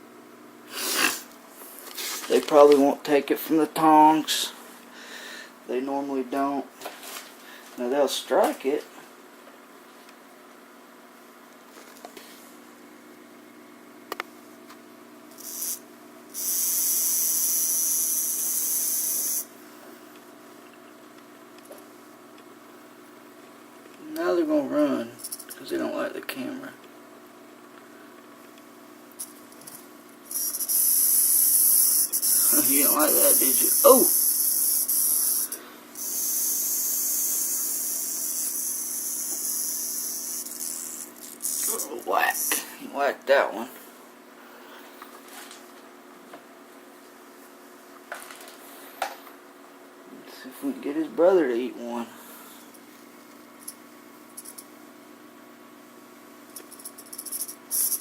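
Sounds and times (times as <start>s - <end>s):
rattlesnake rattle buzzing: 15.3s - 19.6s, 25.1s - 25.7s, 29.1s - 42.7s, 53.6s - 54.7s, 56.5s - 58.0s.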